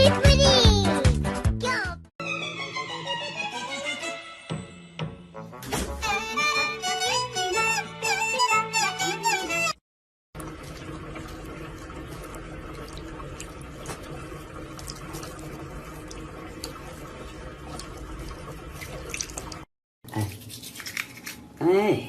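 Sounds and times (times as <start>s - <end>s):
running water: 10.4s - 19.7s.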